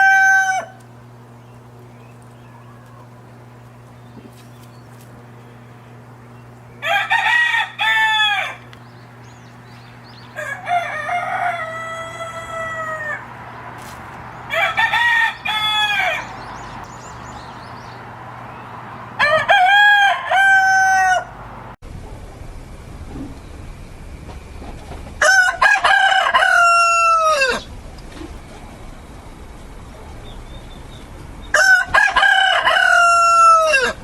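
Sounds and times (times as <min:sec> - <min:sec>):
rooster crowing: 0:00.0 - 0:00.9, 0:06.8 - 0:08.8, 0:10.1 - 0:13.6, 0:14.3 - 0:16.8, 0:17.7 - 0:21.8, 0:25.2 - 0:27.7, 0:31.5 - 0:34.0
steady low hum: 0:00.0 - 0:34.0.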